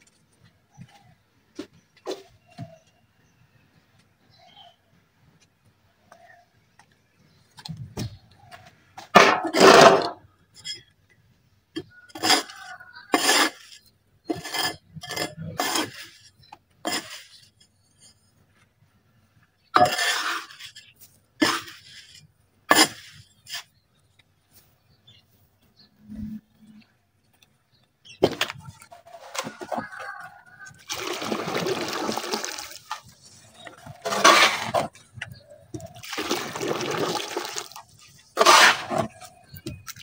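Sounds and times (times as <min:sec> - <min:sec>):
gritty scrapes of wet dirt: 0:12.2 - 0:17.6, 0:19.8 - 0:23.8, 0:30.6 - 0:40.0.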